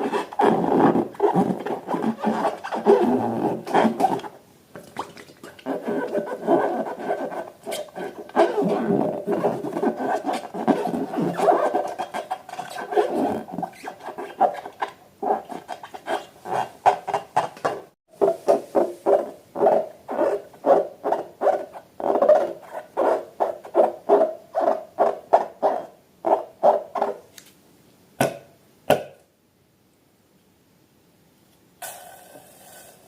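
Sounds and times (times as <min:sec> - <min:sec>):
rubber balloons squeaking: 0:00.0 - 0:04.4, 0:05.6 - 0:27.2.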